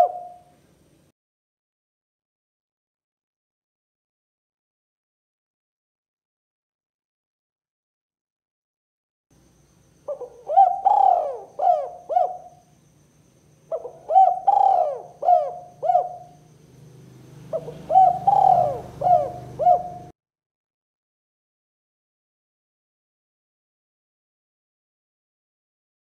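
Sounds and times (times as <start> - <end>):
dove cooing: 0.0 - 0.5, 10.1 - 12.7, 13.7 - 16.6, 17.2 - 20.1
faint low hum: 0.0 - 1.1.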